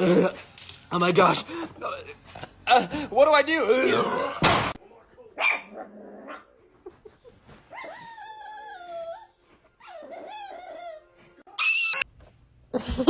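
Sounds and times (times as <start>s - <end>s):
dog whining: 7.7s - 12.1s.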